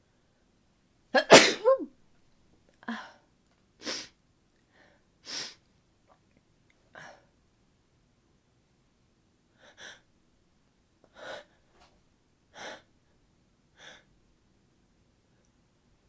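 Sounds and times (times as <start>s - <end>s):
woman sneezing: 1.2s - 1.9s.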